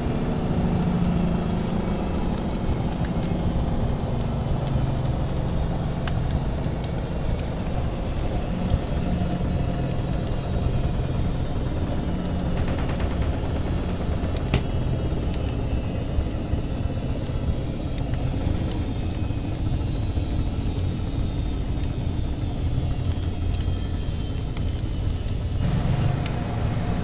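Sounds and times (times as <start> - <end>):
washing machine rumbling: 0.0 - 15.8, 25.6 - 27.0
wood fire crackling: 0.0 - 19.2, 24.2 - 27.0.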